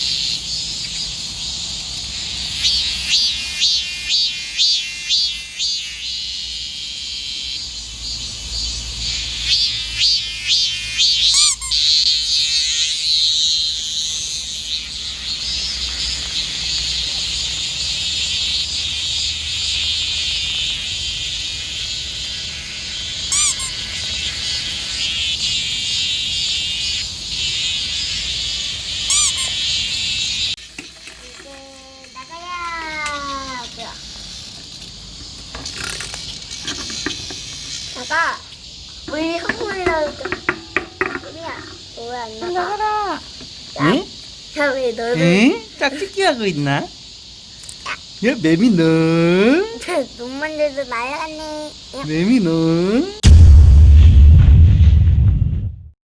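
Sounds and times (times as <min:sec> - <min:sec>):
cicadas buzzing: 0:00.0 - 0:53.3
rising squeaky calls: 0:09.0 - 0:12.8, 0:23.2 - 0:24.6, 0:29.0 - 0:30.0.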